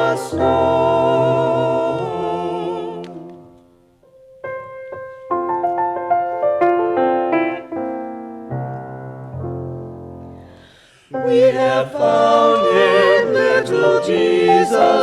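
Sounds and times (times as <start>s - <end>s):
piano playing: 0.0s - 15.0s.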